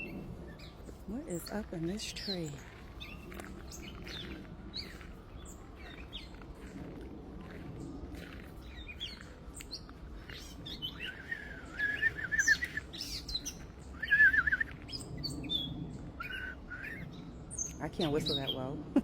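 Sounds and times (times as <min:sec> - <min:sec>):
birds chirping: 0:00.0 - 0:19.0
bird warbling: 0:08.8 - 0:18.0.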